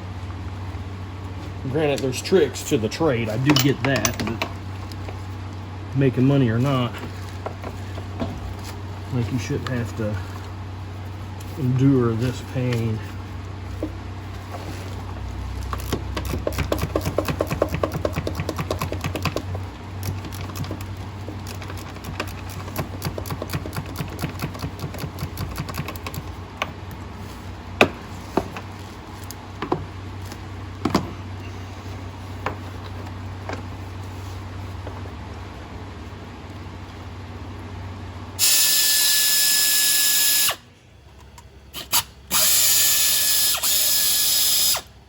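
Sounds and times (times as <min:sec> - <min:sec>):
steady low hum: 0:00.0 - 0:38.4, 0:40.3 - 0:45.0
metal tools clinking: 0:03.3 - 0:04.5
ratchet wrench clicking: 0:41.8 - 0:44.9.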